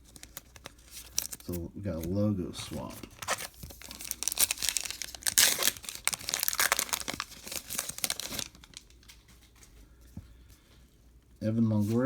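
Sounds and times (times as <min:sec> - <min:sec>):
wrapper tearing and crinkling: 0:00.0 - 0:02.1, 0:02.8 - 0:09.4.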